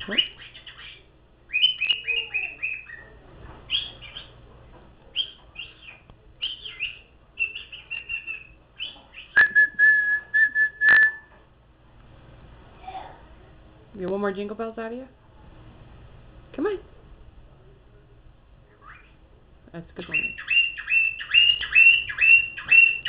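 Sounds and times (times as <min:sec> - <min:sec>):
cockatiel whistling and chirping: 0:00.2 - 0:03.0, 0:05.2 - 0:11.3, 0:20.2 - 0:23.0.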